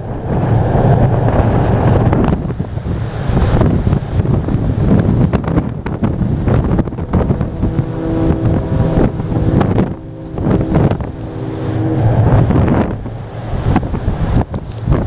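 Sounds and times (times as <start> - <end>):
wind buffeting microphone: 0.0 - 15.0
steady multi-tone hum: 5.8 - 14.5.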